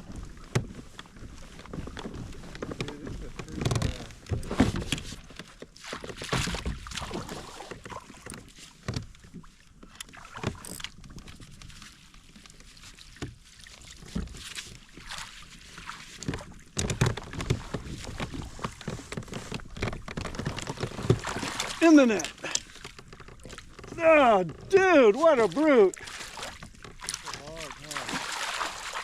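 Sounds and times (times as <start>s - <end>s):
knocks against small boat: 1.9s - 9.1s
water splashing: 5.8s - 8.3s, 20.2s - 29.0s.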